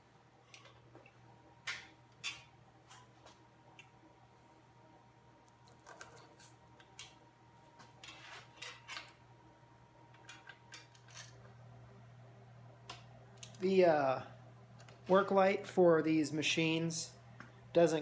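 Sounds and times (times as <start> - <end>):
steady low hum: 0.0 - 18.0
small metal parts clinking: 10.2 - 11.4.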